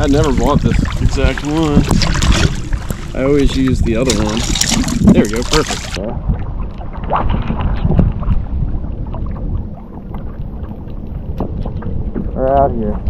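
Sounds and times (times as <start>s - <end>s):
splashy handling sounds: 0.0s - 6.0s
wind rumbling on microphone: 0.0s - 13.0s.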